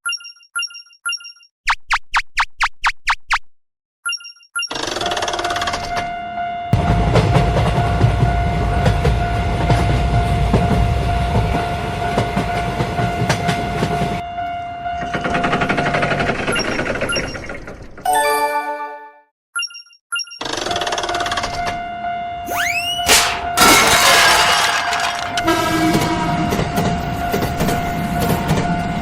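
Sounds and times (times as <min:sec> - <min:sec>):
train rumbling with rail clacks: 0:06.8 - 0:14.2, 0:14.9 - 0:18.0, 0:25.4 - 0:29.0
horn-like tone: 0:21.9 - 0:23.6, 0:25.4 - 0:26.5.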